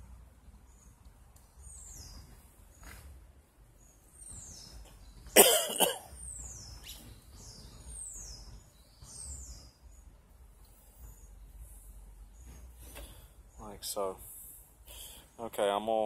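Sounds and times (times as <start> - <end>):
person coughing: 5.4 - 6.1.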